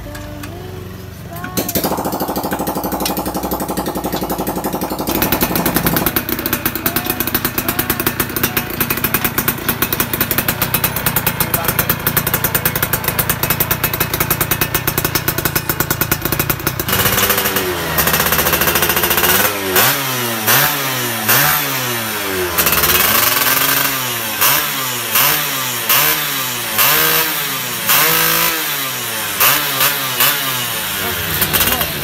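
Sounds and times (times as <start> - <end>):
two-stroke motorcycle engine revving: 1.3 - 32.0.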